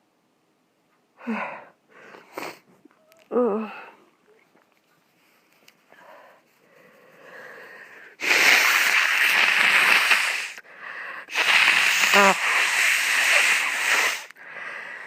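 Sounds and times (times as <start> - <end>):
faint breathing: 1.2 - 2.7, 5.2 - 8.2, 10.5 - 15.0
person blowing nose: 2.3 - 2.6, 8.1 - 10.6, 11.2 - 14.4.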